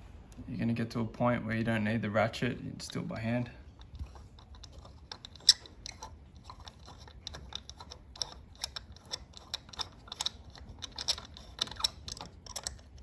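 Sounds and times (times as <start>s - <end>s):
ratchet clicking: 3.8s - 13.0s.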